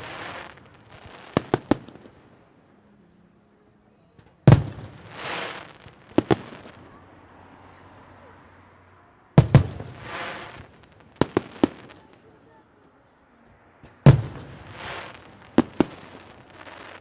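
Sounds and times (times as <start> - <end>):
fireworks bursting: 0.0 - 2.7, 4.1 - 17.0.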